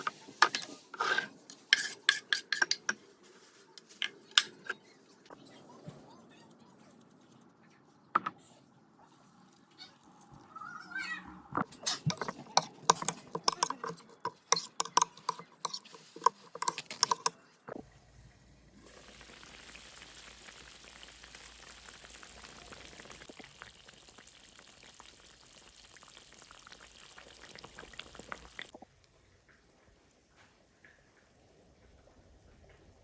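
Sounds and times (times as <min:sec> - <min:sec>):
metal utensil scraping a pan: 0:00.0 - 0:03.0, 0:03.8 - 0:04.8, 0:11.7 - 0:17.4
food sizzling in oil: 0:18.9 - 0:28.7.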